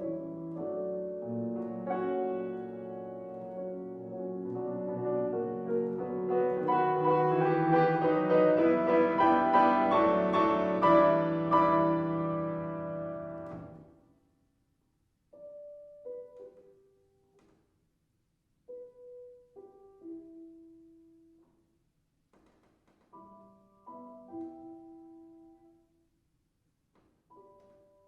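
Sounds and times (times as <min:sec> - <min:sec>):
slow piano playing: 0:00.0 - 0:14.0, 0:15.3 - 0:17.4, 0:18.7 - 0:21.4, 0:23.1 - 0:25.9, 0:27.3 - 0:28.0.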